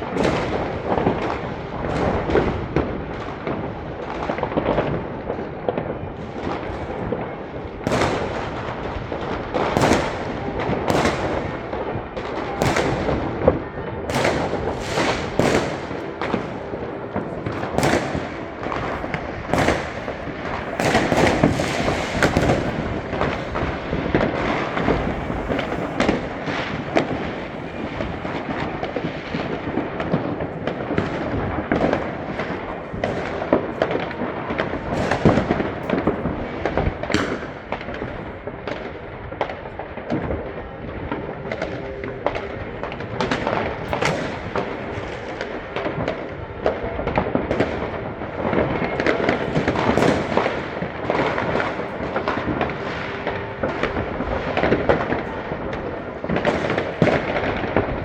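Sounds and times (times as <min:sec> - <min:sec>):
fireworks and firecrackers: 0:00.0 - 0:58.0.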